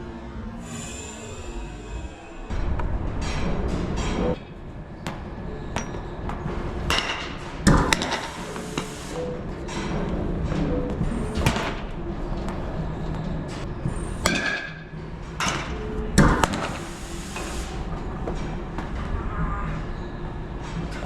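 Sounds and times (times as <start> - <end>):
pitching machine humming: 0.0 - 19.1
sharp knocks of batting: 14.2 - 16.8.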